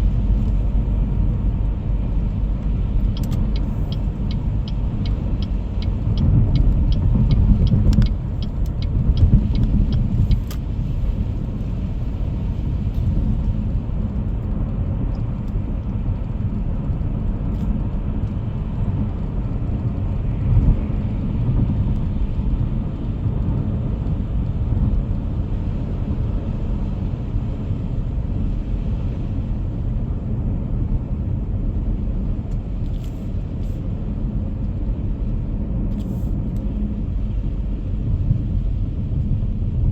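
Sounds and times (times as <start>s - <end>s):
car road and tyre noise: 0.0s - 39.9s
light ticks: 1.2s - 26.2s.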